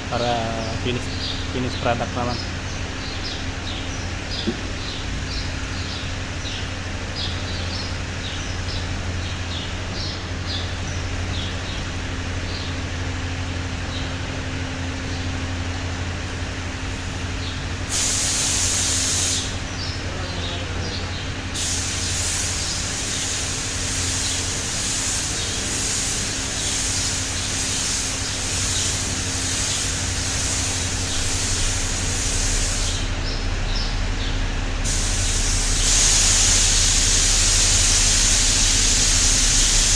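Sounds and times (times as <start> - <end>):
spray gun hissing: 15.0 - 33.5, 34.8 - 39.9.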